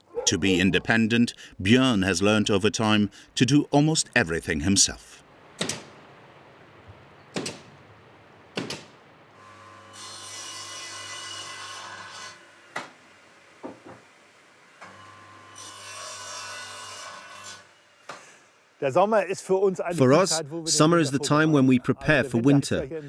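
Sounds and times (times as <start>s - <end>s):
sharp knocks: 5.6s - 5.9s, 7.3s - 7.7s, 8.5s - 9.0s.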